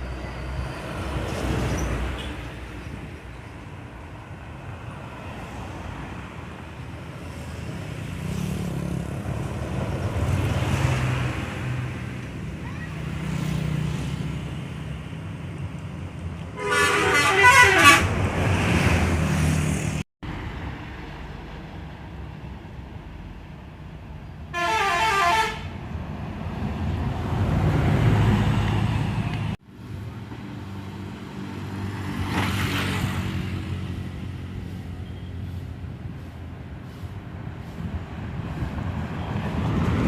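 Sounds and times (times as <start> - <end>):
buses driving past: 0.0 - 40.0
multi-tone musical bus horn: 16.6 - 18.1, 24.5 - 25.7.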